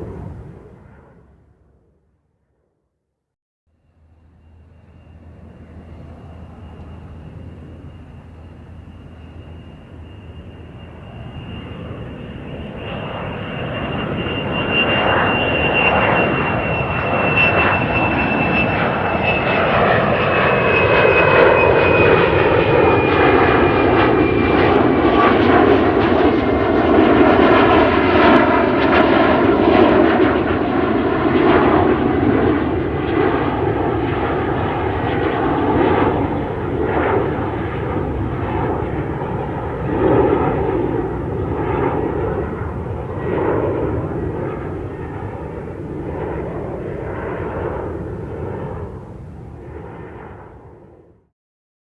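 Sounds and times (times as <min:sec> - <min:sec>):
airplane engine roar: 0:00.0 - 0:02.7, 0:03.7 - 0:51.3
high whine falling in pitch: 0:03.7 - 0:29.4.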